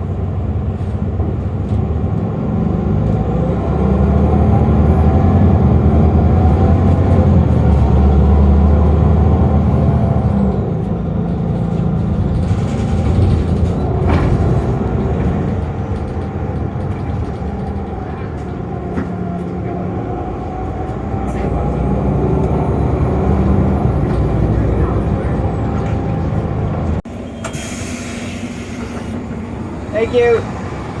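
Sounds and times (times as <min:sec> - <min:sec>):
bus engine rumble: 0:00.0 - 0:31.0.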